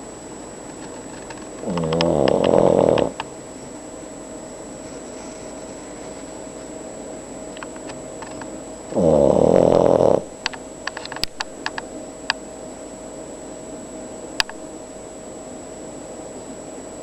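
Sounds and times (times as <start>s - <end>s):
dog snoring: 1.6s - 3.2s, 8.9s - 10.4s.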